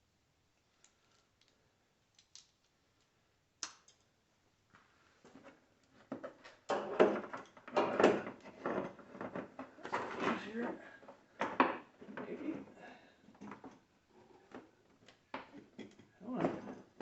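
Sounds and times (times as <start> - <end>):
tools clattering and rattling: 5.4 - 12.7, 13.3 - 17.0.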